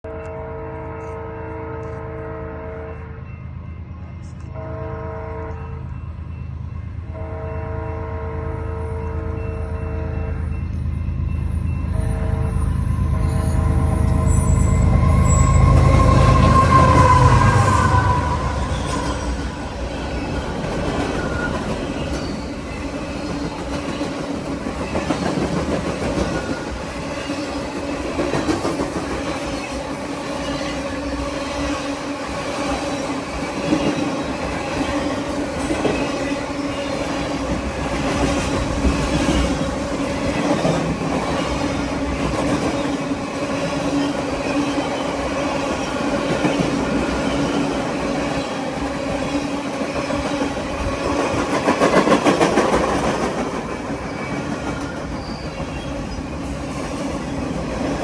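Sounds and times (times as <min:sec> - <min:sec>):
steady tone: 0:04.3 - 0:20.2
train wheels clattering over rail: 0:32.0 - 0:57.0.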